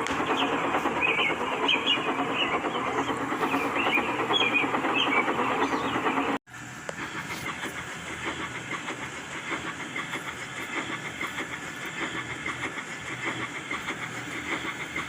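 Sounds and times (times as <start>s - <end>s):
fine rapid rattling: 0.0s - 6.4s
steam hissing: 0.0s - 15.0s.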